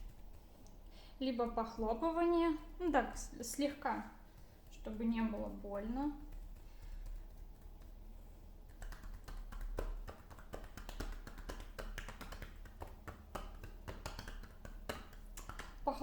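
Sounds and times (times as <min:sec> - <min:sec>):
hands patting a back: 0:03.5 - 0:16.0.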